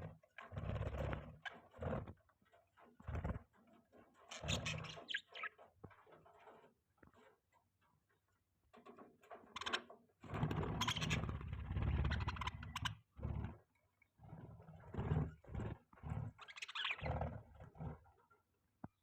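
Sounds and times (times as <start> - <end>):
budgies chirping: 4.3 - 5.6, 10.8 - 13.5, 15.6 - 18.0.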